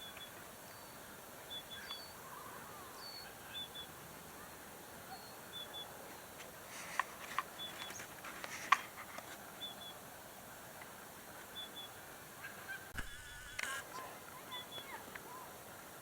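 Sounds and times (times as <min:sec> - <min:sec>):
lower curving bird calls: 0:00.0 - 0:10.4, 0:13.6 - 0:15.7
small birds chirping: 0:00.0 - 0:10.5, 0:11.4 - 0:13.0, 0:13.6 - 0:15.6.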